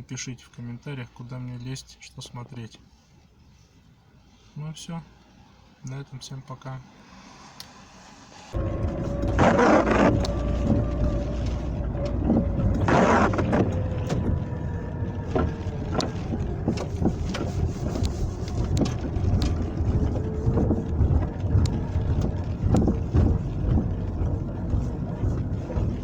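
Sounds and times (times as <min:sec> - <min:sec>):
car rumbling over rough road: 0:08.5 - 0:26.0
suspension knocks: 0:08.6 - 0:26.0.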